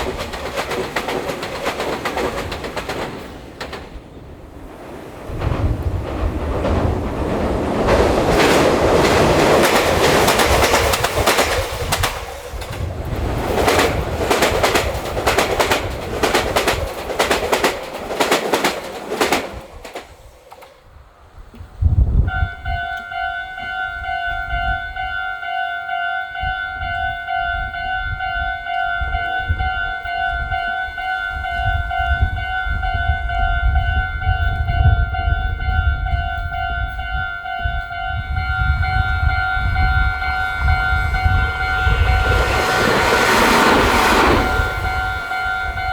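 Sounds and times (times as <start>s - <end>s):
train wheels clattering over joints: 0.0s - 20.8s
wind rumble on microphone: 4.1s - 17.4s, 20.9s - 23.0s, 26.4s - 45.9s
level crossing alarm ringing: 22.3s - 45.9s.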